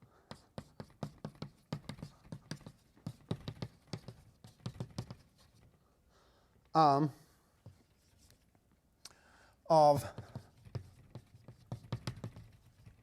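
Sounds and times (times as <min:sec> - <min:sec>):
chalk tapping on blackboard: 0:00.2 - 0:05.7, 0:10.0 - 0:13.0.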